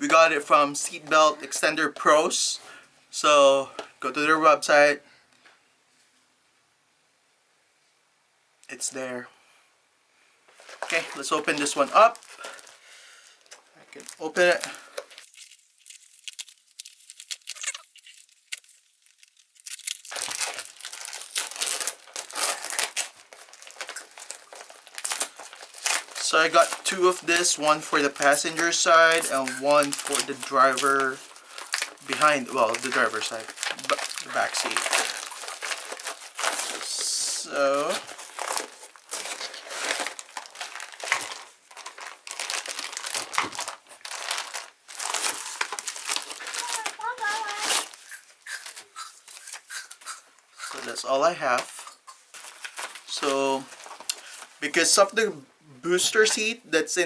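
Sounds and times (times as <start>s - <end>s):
packaging crinkling and tearing: 10.6s - 49.9s, 51.6s - 54.6s.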